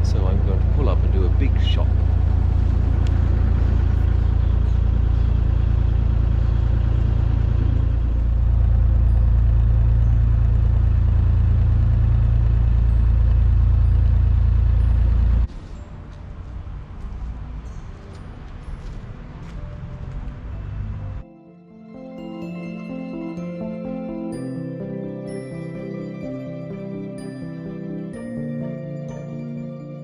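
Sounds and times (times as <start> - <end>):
boat engine droning: 0.0 - 15.5.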